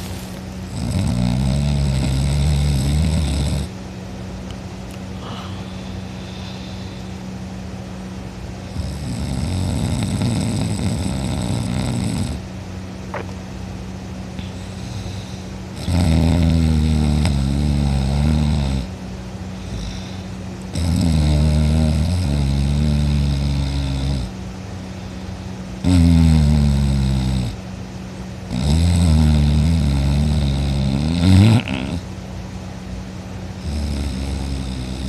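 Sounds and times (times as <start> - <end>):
person snoring loudly: 0.0 - 3.7, 8.7 - 12.4, 14.6 - 18.9, 19.6 - 24.3, 25.8 - 27.6, 28.5 - 32.1, 33.6 - 35.0.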